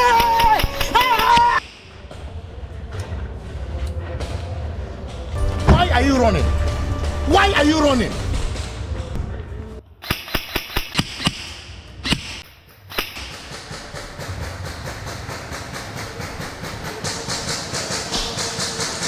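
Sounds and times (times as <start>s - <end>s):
fast faint ticking: 0.0s - 1.6s
airsoft gun shots: 0.0s - 2.0s, 10.0s - 14.1s.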